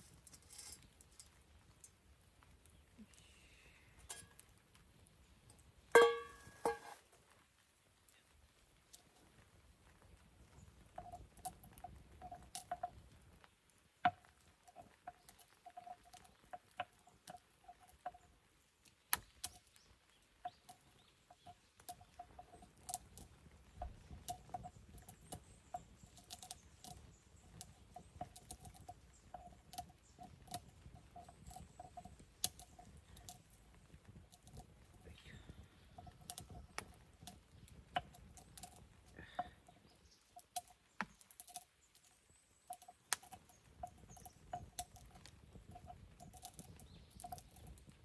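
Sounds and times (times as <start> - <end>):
campfire crackling: 0.0 - 48.0.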